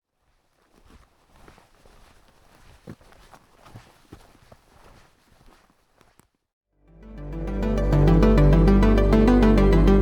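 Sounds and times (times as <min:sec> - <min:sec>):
light ticks and crunches: 0:00.0 - 0:06.4
footsteps walking: 0:00.1 - 0:06.4.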